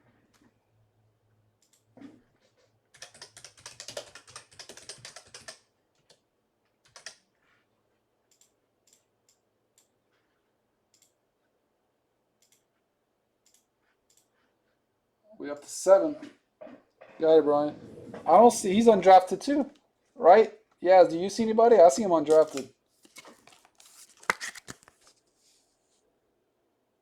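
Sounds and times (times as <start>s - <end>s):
keyboard typing: 2.4s - 6.2s, 6.8s - 7.2s.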